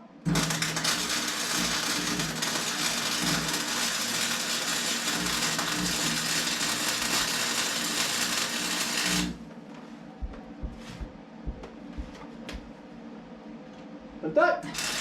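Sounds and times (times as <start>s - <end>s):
arc welding crackle and hiss: 0.2s - 9.5s, 14.6s - 15.0s
faint low hum: 9.5s - 14.4s.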